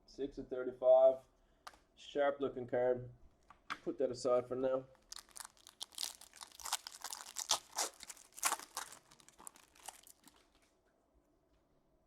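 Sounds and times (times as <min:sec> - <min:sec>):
plastic wrapping crinkling: 0:05.0 - 0:10.7.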